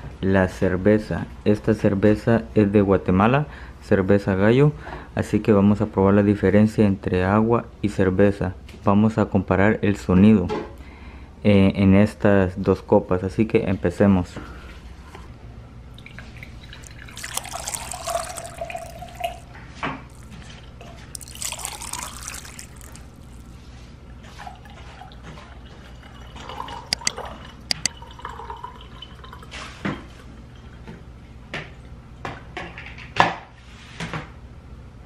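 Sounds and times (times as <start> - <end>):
water pouring into a glass: 15.9 - 23.6, 24.2 - 30.8.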